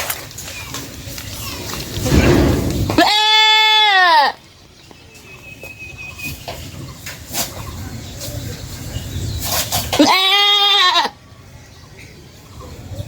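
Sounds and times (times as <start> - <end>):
goat bleating: 3.0 - 4.4, 10.0 - 11.2.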